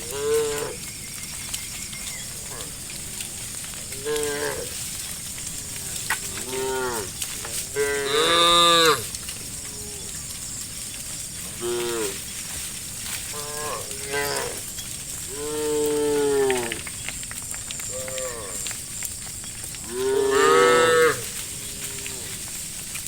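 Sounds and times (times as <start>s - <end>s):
cows mooing: 0.0s - 0.9s, 2.0s - 10.3s, 11.4s - 12.3s, 13.3s - 16.9s, 17.8s - 18.8s, 19.8s - 22.5s.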